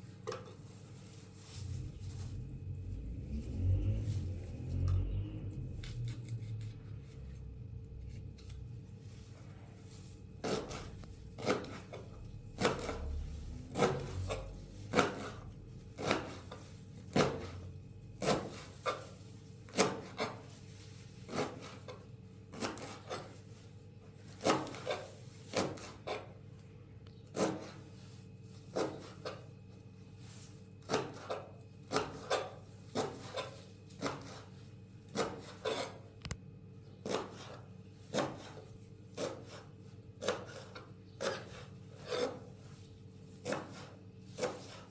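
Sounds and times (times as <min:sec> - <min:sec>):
knife cutting plant stems: 0:04.2 - 0:08.8, 0:10.4 - 0:17.6, 0:18.2 - 0:20.6, 0:21.2 - 0:23.4, 0:24.2 - 0:26.4, 0:27.2 - 0:27.9, 0:28.5 - 0:29.5, 0:30.4 - 0:36.4, 0:37.0 - 0:42.7, 0:43.3 - 0:44.9.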